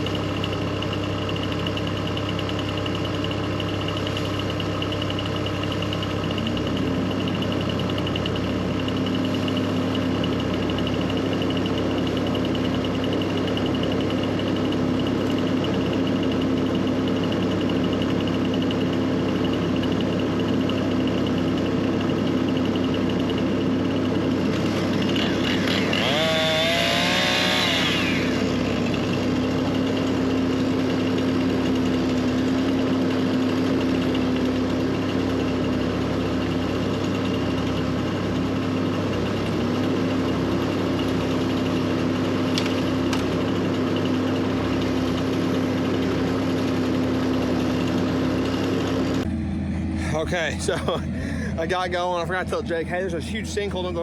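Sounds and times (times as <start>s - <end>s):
diesel engine running: 0.0s - 54.0s.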